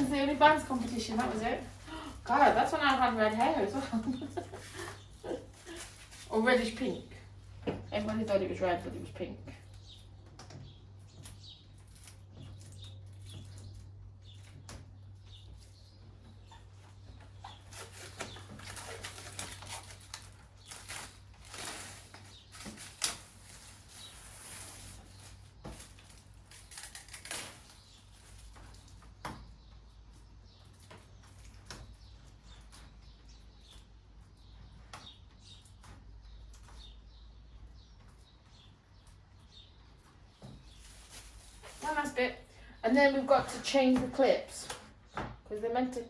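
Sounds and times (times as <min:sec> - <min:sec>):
plastic film rustling and crackling: 0:00.0 - 0:09.3, 0:16.4 - 0:29.2, 0:40.1 - 0:43.8.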